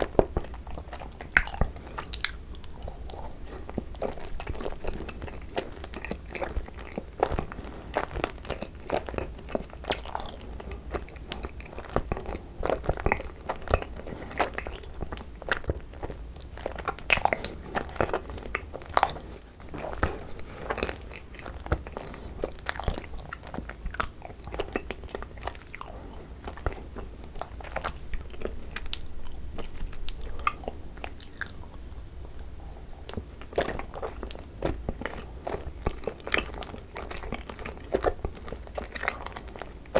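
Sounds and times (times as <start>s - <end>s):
biting and chewing rice cakes: 0.0s - 39.9s.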